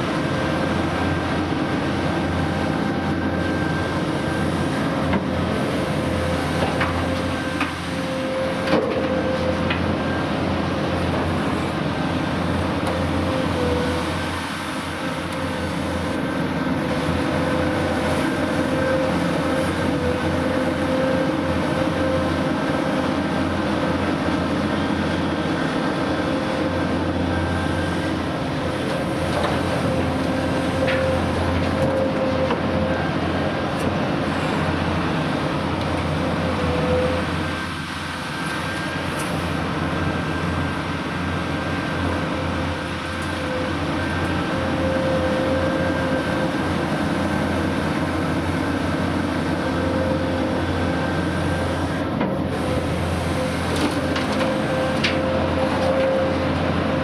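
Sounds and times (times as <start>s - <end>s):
excavator engine drone: 0.0s - 57.0s
machinery whine: 0.0s - 57.0s.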